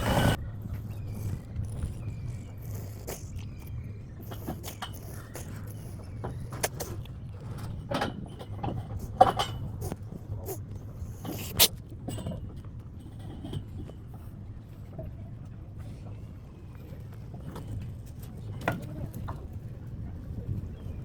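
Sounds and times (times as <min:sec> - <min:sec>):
cat sneezing and snorting: 0:01.1 - 0:07.2, 0:08.9 - 0:11.7.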